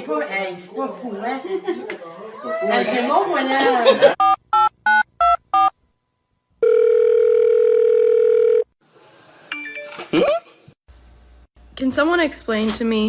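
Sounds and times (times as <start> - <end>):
telephone ringback tone: 6.6 - 8.7.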